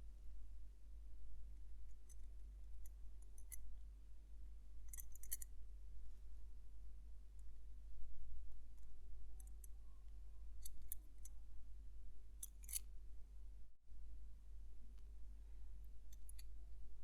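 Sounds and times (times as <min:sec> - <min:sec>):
steady low hum: 0:00.0 - 0:17.0
small metallic tool clicks: 0:04.9 - 0:05.5, 0:16.1 - 0:16.4.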